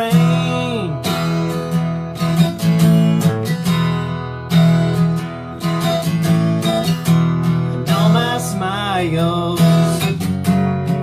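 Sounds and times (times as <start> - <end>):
person singing: 0.0 - 1.4, 7.6 - 10.3
acoustic guitar strumming: 0.0 - 11.0.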